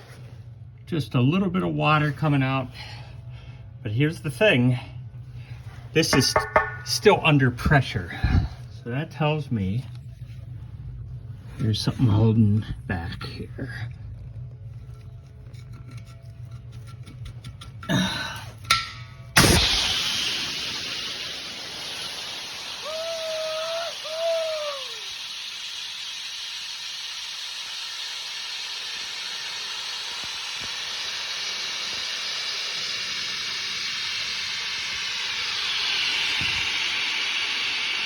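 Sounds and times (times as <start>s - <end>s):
air and water hissing from drain: 5.2s - 38.0s
knocks: 6.2s - 7.2s
sudden air blast: 18.9s - 38.0s.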